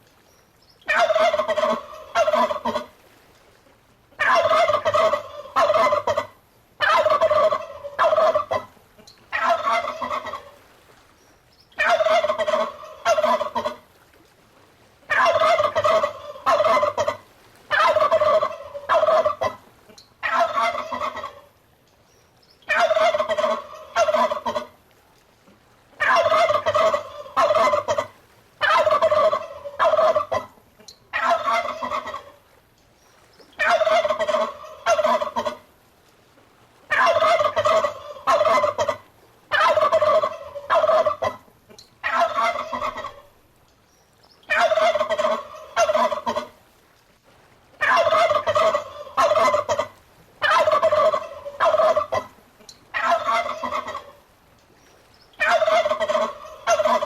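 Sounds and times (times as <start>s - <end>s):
turkey gobbling: 0.9s - 2.9s, 4.2s - 10.6s, 11.8s - 13.8s, 15.1s - 19.6s, 20.2s - 21.5s, 22.7s - 24.7s, 26.0s - 32.4s, 33.6s - 35.6s, 36.9s - 43.3s, 44.5s - 46.6s, 47.8s - 52.3s, 52.9s - 54.2s, 55.4s - 57.0s.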